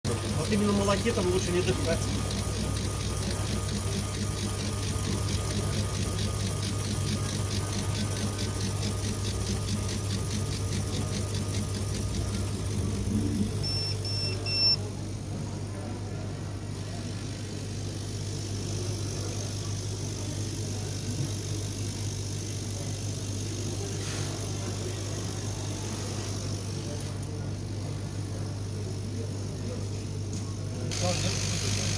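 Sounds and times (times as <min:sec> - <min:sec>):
quick regular ticking: 0:00.1 - 0:13.1
engraving machine humming: 0:00.1 - 0:31.9
short high beeps: 0:13.6 - 0:14.8.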